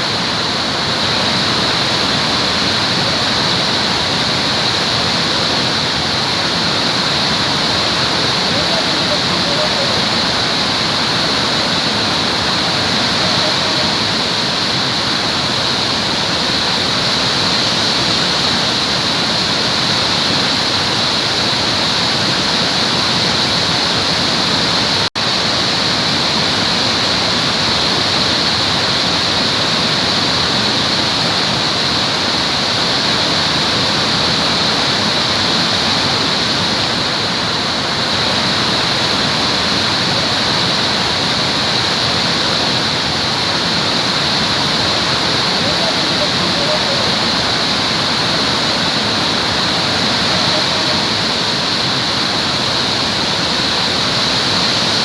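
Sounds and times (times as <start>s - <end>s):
waterfall rushing: 0.0s - 55.0s.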